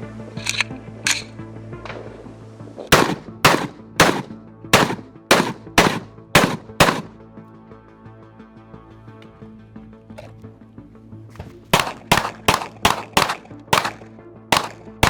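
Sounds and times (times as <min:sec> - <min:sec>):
background music: 0:00.0 - 0:15.0
rifle shots: 0:02.9 - 0:07.1, 0:11.7 - 0:15.0.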